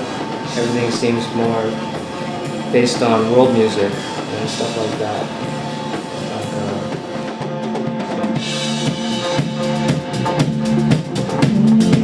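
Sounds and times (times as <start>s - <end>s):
band playing electronic track: 0.0s - 12.0s
drum kit beat: 0.0s - 12.0s
steady bass line: 4.5s - 12.0s.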